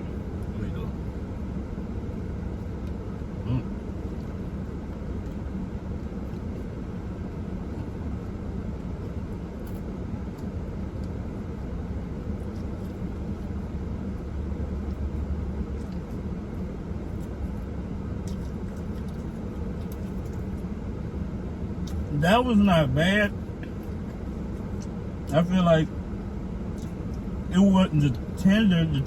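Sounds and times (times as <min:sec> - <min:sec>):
low background rumble: 0:00.0 - 0:29.0
person chewing food: 0:02.6 - 0:20.6, 0:21.8 - 0:22.1.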